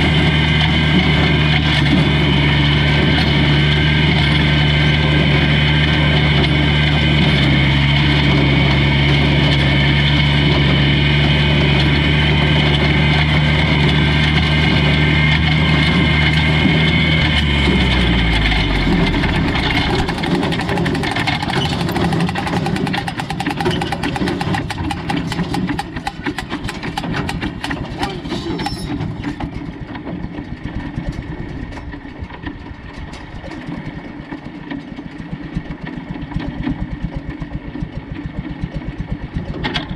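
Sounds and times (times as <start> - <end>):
old tractor engine running: 0.0 - 39.9
rapid clicking: 17.3 - 28.2.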